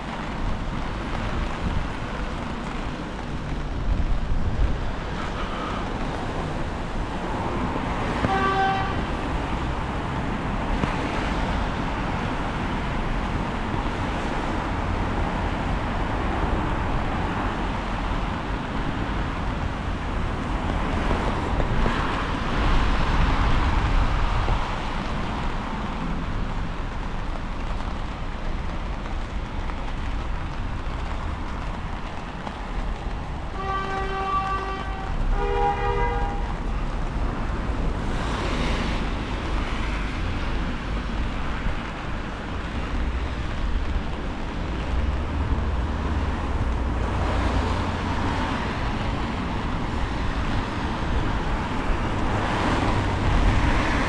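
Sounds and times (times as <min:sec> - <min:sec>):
wind buffeting microphone: 0:00.0 - 0:08.4, 0:09.0 - 0:33.6.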